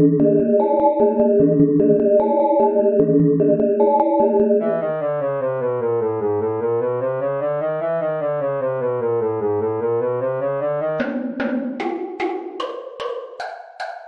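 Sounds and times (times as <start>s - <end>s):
percussive synth hits: 11.0s - 14.0s.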